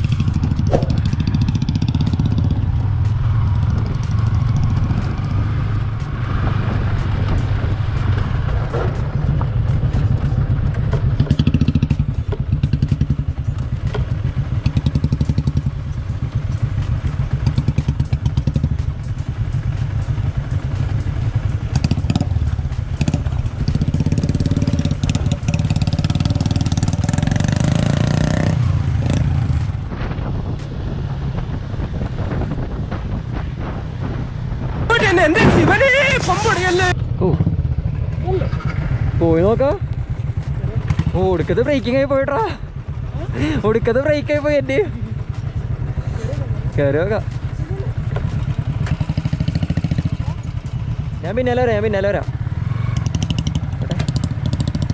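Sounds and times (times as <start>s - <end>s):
motorcycle engine running: 0.0s - 54.9s
bike knocks and rattles: 8.2s - 15.7s.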